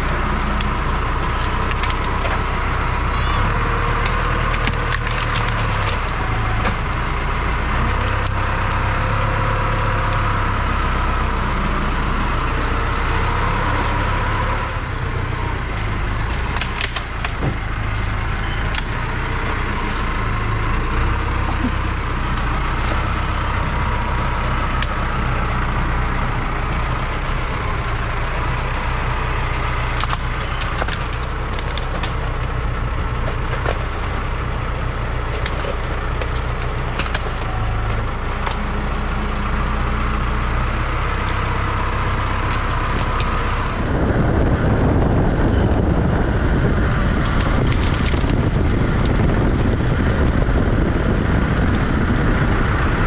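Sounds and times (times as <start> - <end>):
vehicle engine running: 0.0 - 53.0
wind buffeting the microphone: 43.7 - 53.0.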